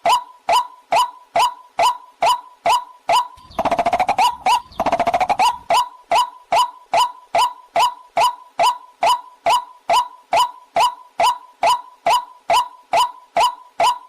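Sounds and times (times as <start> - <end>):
bird calling sharp notes: 0.1 - 14.0
bird fast chattering: 3.4 - 7.1.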